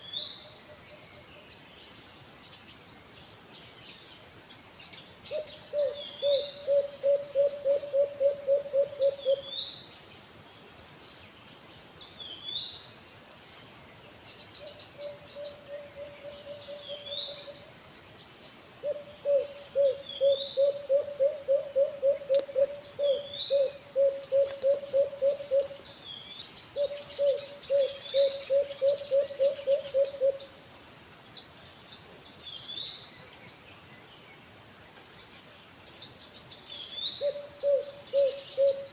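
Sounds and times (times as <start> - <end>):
high insect drone: 0.0 - 38.9
dove cooing: 5.3 - 9.5, 18.8 - 25.8, 26.8 - 30.5, 37.2 - 38.9.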